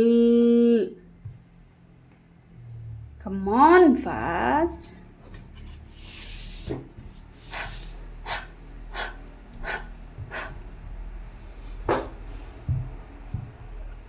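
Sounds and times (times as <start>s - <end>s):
person panting: 7.4s - 12.3s.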